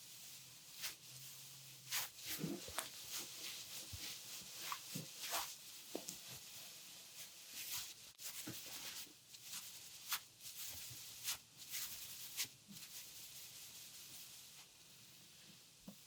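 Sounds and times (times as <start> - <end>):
hands rubbing oiled skin: 1.9 - 6.6.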